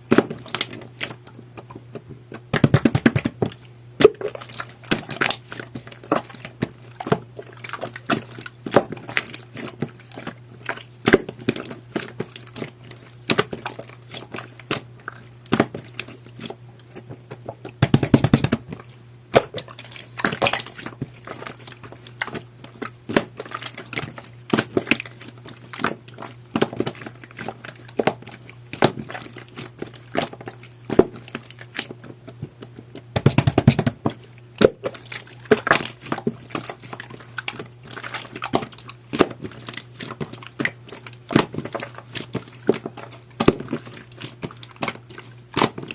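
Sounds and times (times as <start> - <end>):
slime being squished: 0.0 - 45.9.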